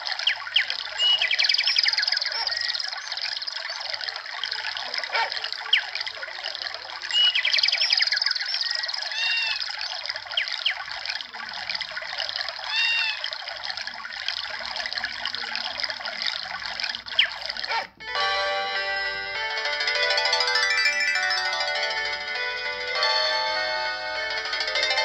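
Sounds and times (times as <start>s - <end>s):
birds chirping from phone speaker: 0.0s - 11.0s, 16.9s - 18.0s
running water from phone speaker: 0.0s - 25.0s.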